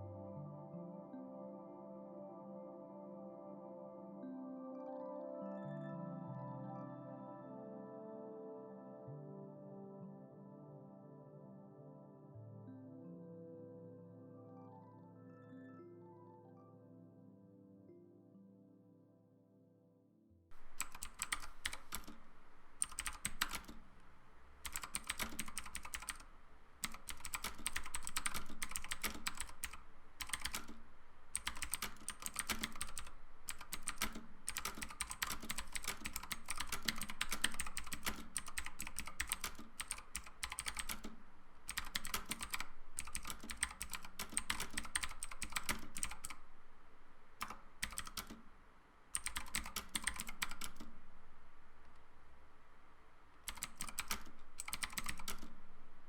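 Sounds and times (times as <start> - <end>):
typing on mechanical keyboard: 20.6 - 46.5, 47.4 - 48.5, 49.1 - 51.0, 53.4 - 55.6.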